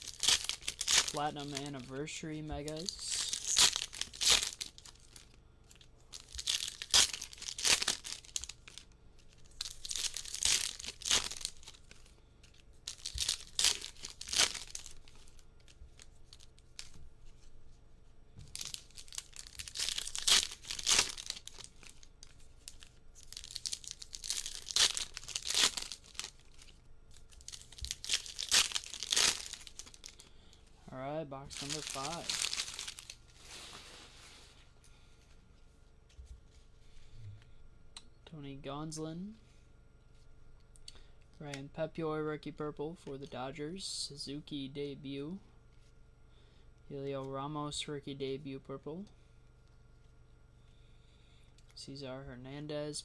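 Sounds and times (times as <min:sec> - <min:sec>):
card pack wrappers tearing: 0:00.0 - 0:17.0, 0:18.5 - 0:30.3, 0:31.5 - 0:34.2.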